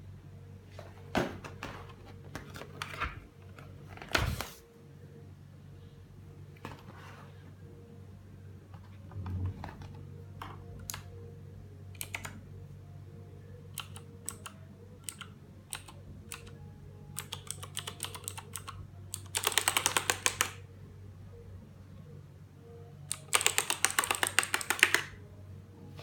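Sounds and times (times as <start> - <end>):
faint low hum: 0.0 - 26.0
mechanical keyboard clicks: 10.4 - 11.1, 12.0 - 12.4, 13.7 - 16.6, 17.2 - 20.6, 23.1 - 25.2.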